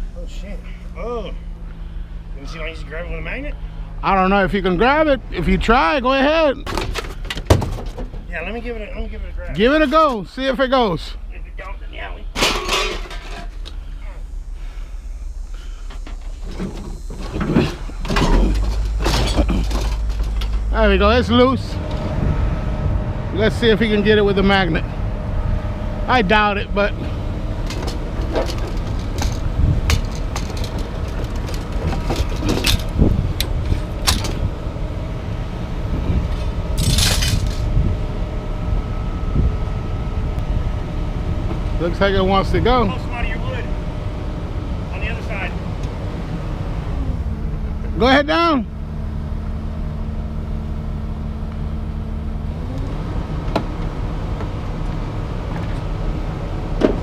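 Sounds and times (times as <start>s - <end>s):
crane engine running: 0.0s - 57.0s
metal clinks and clanks: 12.4s - 13.7s, 16.4s - 20.7s, 27.6s - 34.4s, 36.4s - 37.7s
sharp metal clanks: 12.4s - 13.7s.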